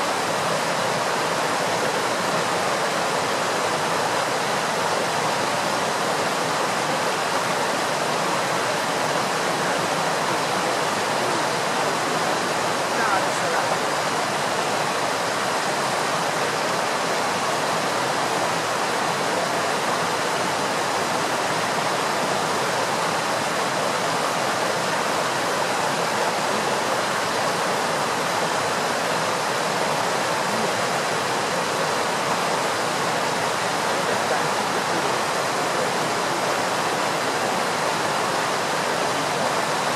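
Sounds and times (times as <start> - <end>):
flowing water rushing: 0.0 - 39.9.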